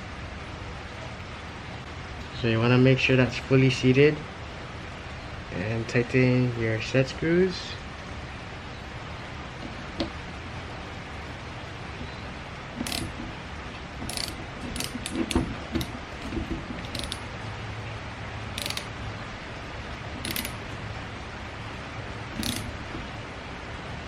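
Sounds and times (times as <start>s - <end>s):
hand tool metal clicks and scrapes: 12.8s - 13.2s, 14.0s - 17.2s, 18.6s - 18.9s, 20.2s - 20.6s, 22.4s - 23.0s.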